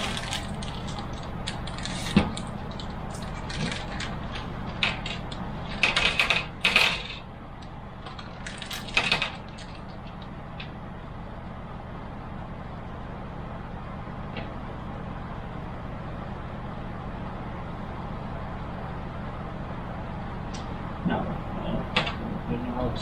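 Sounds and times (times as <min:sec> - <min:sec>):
parts rattling and rustling: 0:00.0 - 0:07.3, 0:08.0 - 0:10.3
steady low hum: 0:00.0 - 0:23.0.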